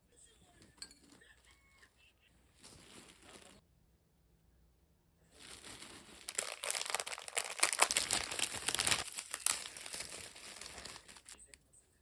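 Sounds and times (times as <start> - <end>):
packaging crinkling and tearing: 5.4 - 11.4.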